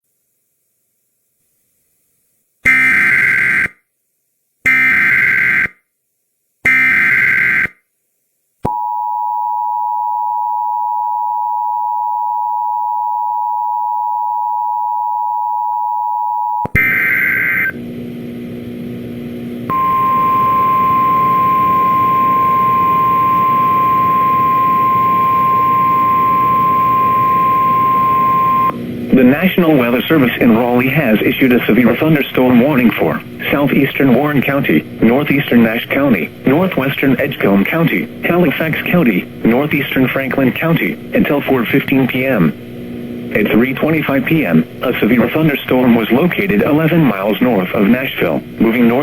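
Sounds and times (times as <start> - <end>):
hissy weather radio audio: 16.7 - 49.0.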